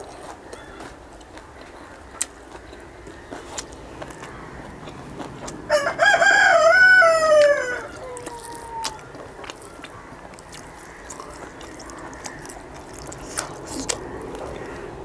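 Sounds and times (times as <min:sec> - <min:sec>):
rooster crowing: 0:05.7 - 0:09.3.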